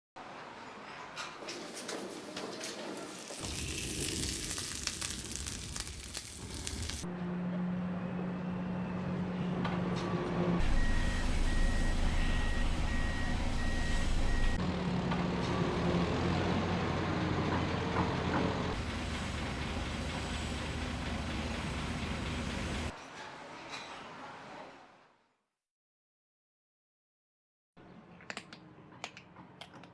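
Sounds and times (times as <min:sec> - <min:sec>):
crackling noise: 0:02.8 - 0:07.1
vehicle engine running: 0:10.5 - 0:22.9.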